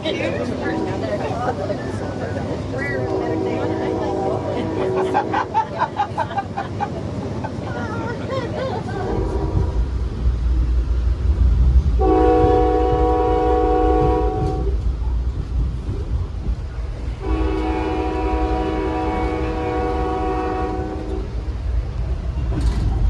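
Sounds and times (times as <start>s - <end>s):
train rumbling: 0.0s - 23.0s
locomotive air horn blasts: 12.0s - 14.8s, 17.2s - 21.4s.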